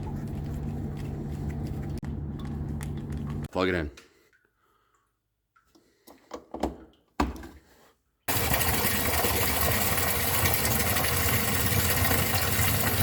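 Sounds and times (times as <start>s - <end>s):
sump pump running: 8.3s - 13.0s.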